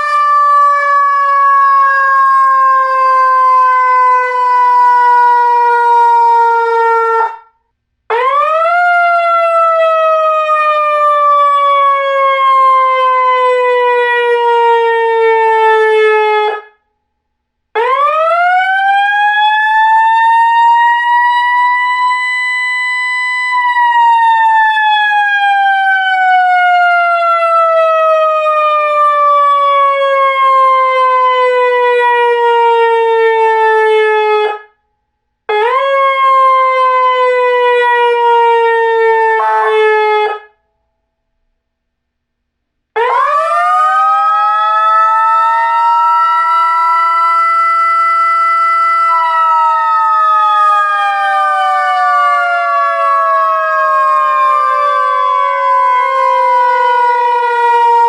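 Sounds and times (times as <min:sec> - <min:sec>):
electronic siren wailing: 0:00.0 - 0:07.5, 0:35.5 - 0:40.5, 0:43.0 - 0:58.0.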